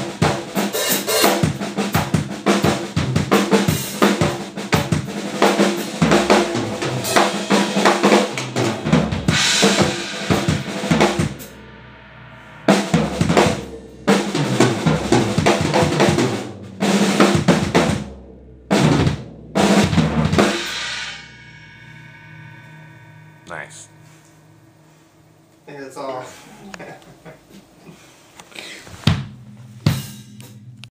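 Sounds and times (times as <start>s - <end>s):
snare and bass drum playing: 0.0s - 11.6s, 12.6s - 18.1s, 18.7s - 21.2s
cymbal crash: 0.0s - 26.6s, 29.3s - 30.9s.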